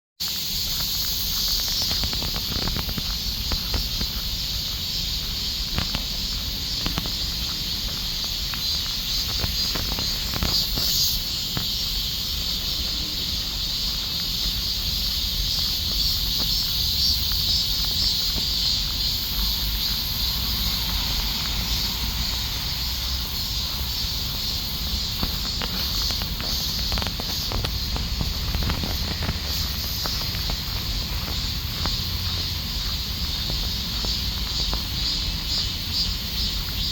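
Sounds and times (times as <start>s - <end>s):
cicadas buzzing: 0.2s - 36.9s.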